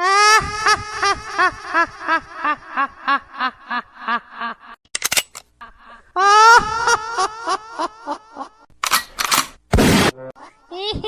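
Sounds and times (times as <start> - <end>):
high-pitched laugh sound effect: 0.0 - 4.8, 5.6 - 8.7.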